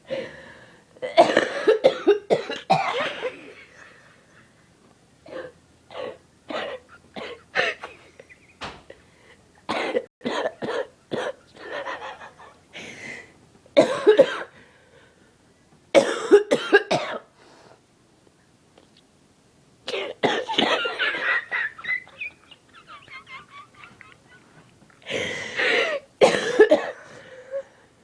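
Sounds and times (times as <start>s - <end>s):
woman coughing: 1.0s - 3.5s, 5.3s - 7.9s, 9.7s - 11.9s, 13.8s - 14.5s, 16.0s - 17.3s, 19.9s - 21.3s, 25.1s - 27.2s.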